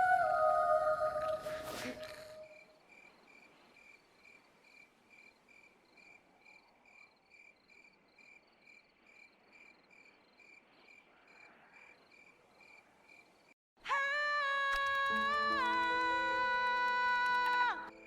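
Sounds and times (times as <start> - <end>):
faint cricket chirping: 0.0 - 13.6.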